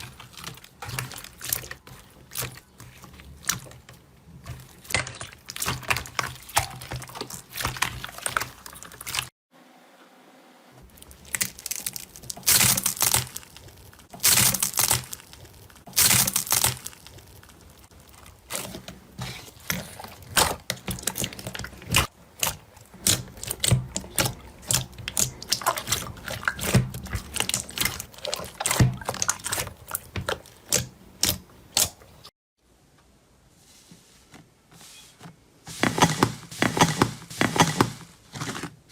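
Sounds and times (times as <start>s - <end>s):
slime crackling and popping: 10.9s - 18.8s.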